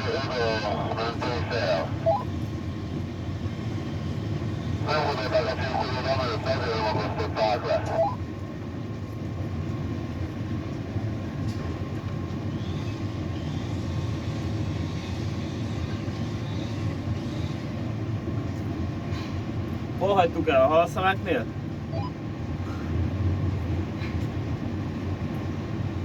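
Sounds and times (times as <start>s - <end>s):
faint steady hum: 0.0s - 14.7s
low mechanical rumble: 0.0s - 26.0s.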